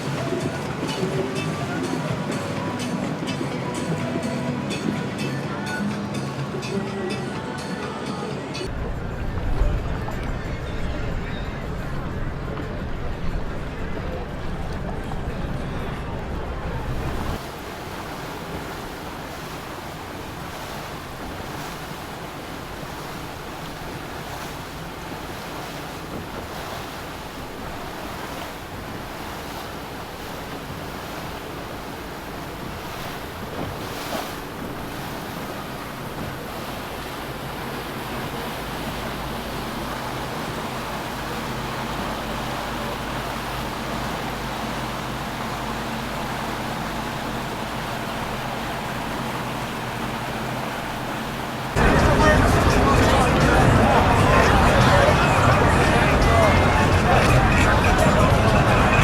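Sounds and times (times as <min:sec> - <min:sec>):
water washing: 0:00.0 - 0:08.0, 0:08.6 - 0:59.0
low boat engine hum: 0:00.0 - 0:59.0.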